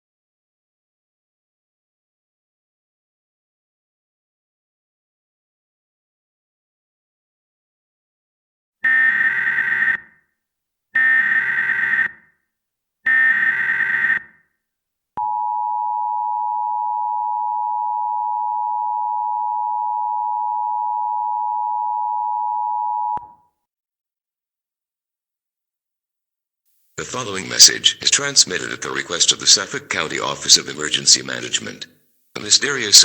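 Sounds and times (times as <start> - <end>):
steady two-tone attention signal: 15.2 - 23.2.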